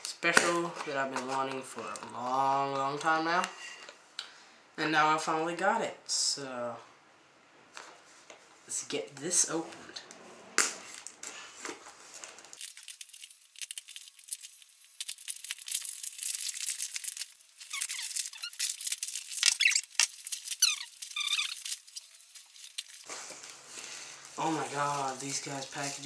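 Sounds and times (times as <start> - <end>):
packaging being torn open: 12.5 - 23.1
squeaky rubbing: 17.5 - 23.1.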